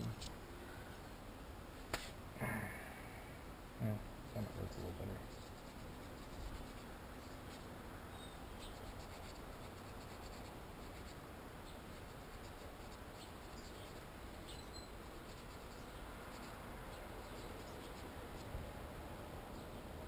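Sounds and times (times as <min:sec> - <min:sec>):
low steady hiss: 0:00.0 - 0:20.0
faint scratching: 0:04.3 - 0:07.8, 0:08.5 - 0:18.6.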